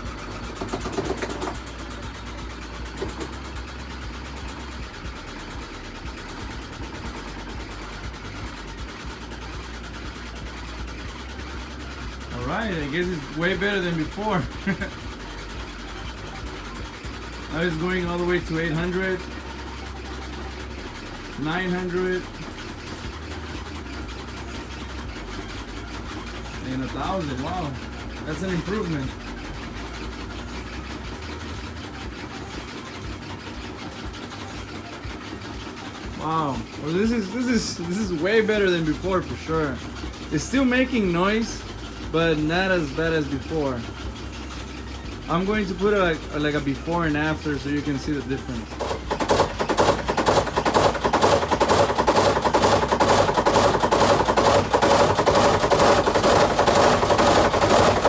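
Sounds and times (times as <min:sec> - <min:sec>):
washing machine drum knocking: 0:00.0 - 0:09.8, 0:48.7 - 0:58.0
washing machine spinning: 0:00.0 - 0:58.0.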